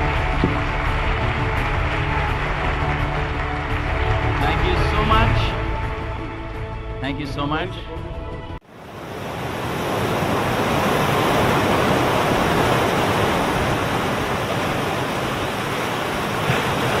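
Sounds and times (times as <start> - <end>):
audience applauding: 0.0 - 5.5.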